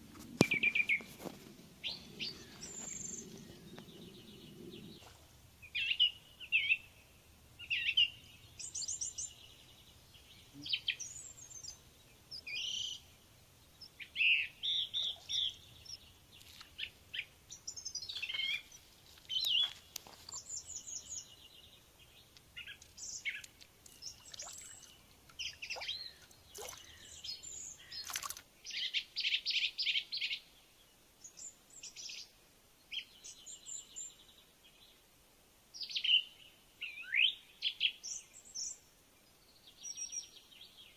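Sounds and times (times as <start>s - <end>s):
songbirds chirping and trilling: 0.1s - 35.0s.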